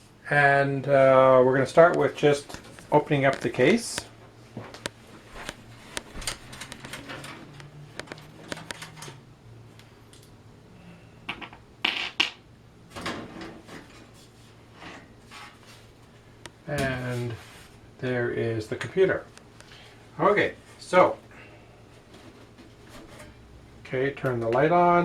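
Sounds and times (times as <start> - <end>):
computer case scraping and knocking: 5.2 - 9.2, 22.0 - 23.4.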